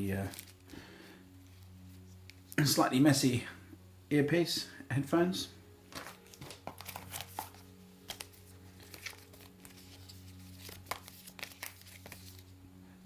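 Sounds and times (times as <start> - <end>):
packaging paper rustling: 0.0 - 0.8, 5.9 - 12.6
faint low hum: 0.0 - 13.0.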